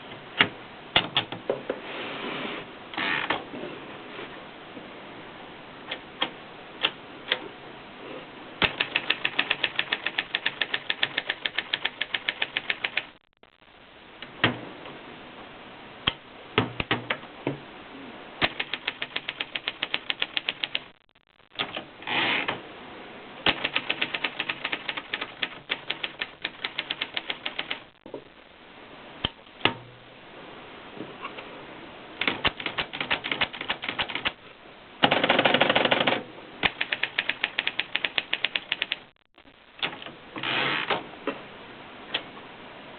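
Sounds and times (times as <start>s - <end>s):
typewriter keys striking: 8.6s - 13.1s, 18.4s - 20.8s, 23.5s - 27.8s, 32.2s - 34.4s, 35.0s - 39.0s.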